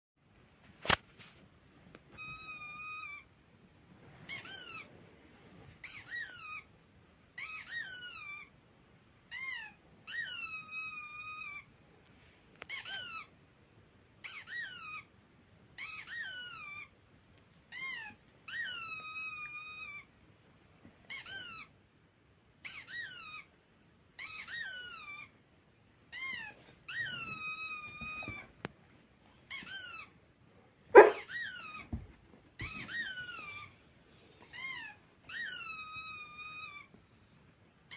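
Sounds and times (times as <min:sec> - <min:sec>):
high squeaks: 0:32.6 - 0:37.0.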